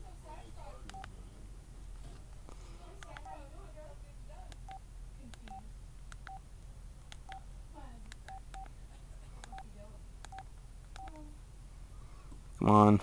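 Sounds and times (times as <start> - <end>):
phone keypad click and beep: 10.3 - 11.2.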